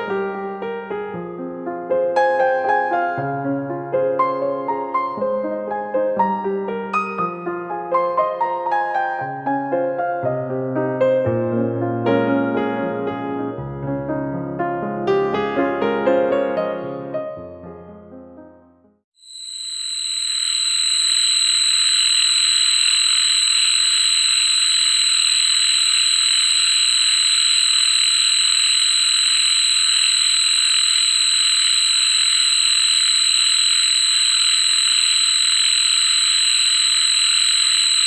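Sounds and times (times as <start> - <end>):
cicadas calling: 19.2 - 38.0.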